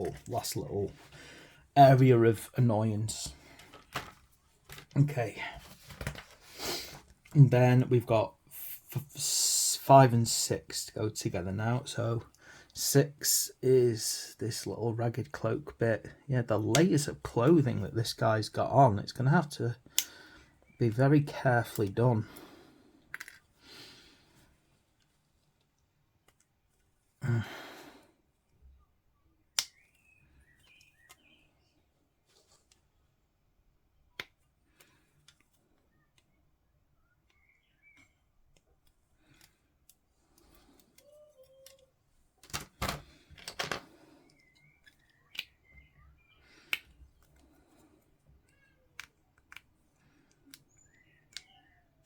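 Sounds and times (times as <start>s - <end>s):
plastic parts clicking and snipping: 23.1s - 23.4s, 37.2s - 45.9s, 48.4s - 51.6s.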